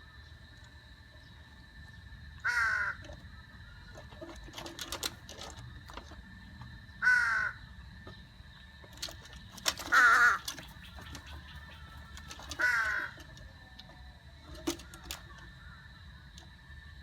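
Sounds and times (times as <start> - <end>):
crow cawing: 2.4 - 3.1, 7.0 - 7.7, 9.9 - 10.6, 11.7 - 13.3.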